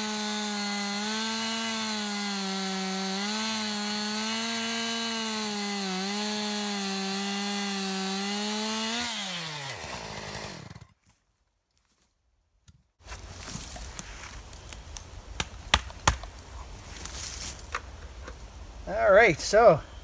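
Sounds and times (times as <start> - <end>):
chainsaw cutting wood: 0.0 - 11.0.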